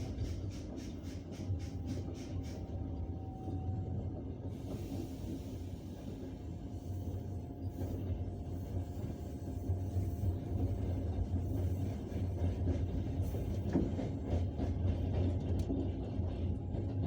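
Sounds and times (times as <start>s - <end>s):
train wheels rumbling on rails: 0.0s - 17.0s
train wheel knocks: 12.7s - 16.1s.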